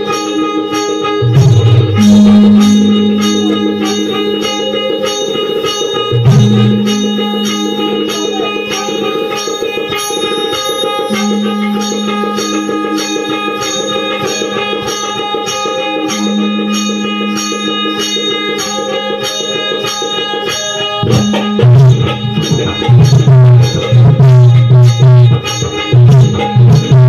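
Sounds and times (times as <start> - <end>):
held melodic notes: 0.0 - 27.0
percussion beat: 0.0 - 27.0
loud drums: 1.2 - 13.0.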